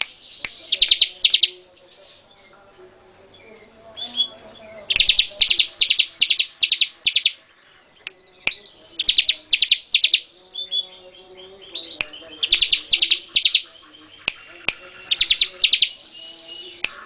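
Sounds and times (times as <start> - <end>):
sharp clicks: 0.0 - 1.5, 4.9 - 7.4, 8.0 - 10.3
bird singing stuttered notes: 0.0 - 17.0.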